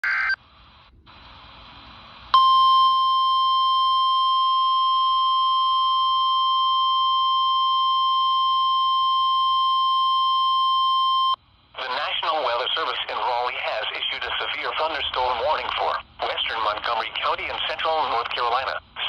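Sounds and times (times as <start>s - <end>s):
faint static hiss: 0.1s - 2.5s, 11.4s - 19.0s
loud steady alarm beep: 2.4s - 11.4s.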